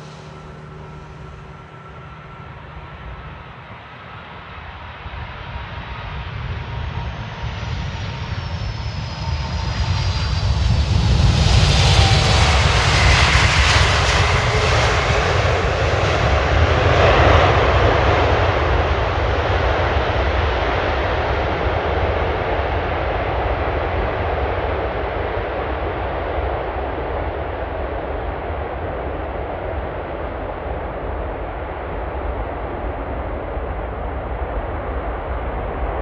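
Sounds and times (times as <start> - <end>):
high engine whine: 0.0 - 36.0
jet engines rumble and rush: 0.0 - 36.0.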